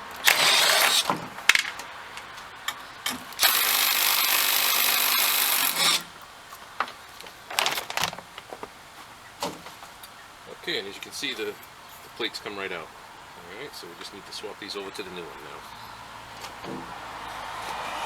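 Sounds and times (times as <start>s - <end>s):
handling clicks and knocks: 0.1s - 3.5s
power drill running: 0.2s - 1.2s, 3.3s - 6.2s.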